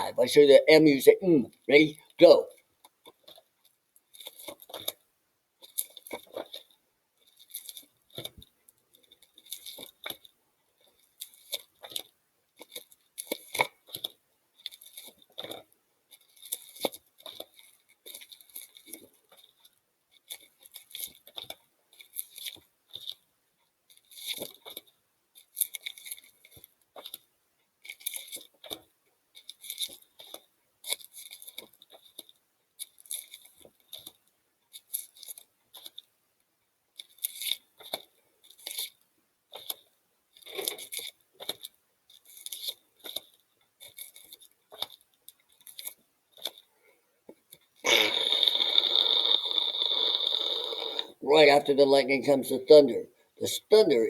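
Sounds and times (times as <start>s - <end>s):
paper cards rustling: 37.0s - 46.7s.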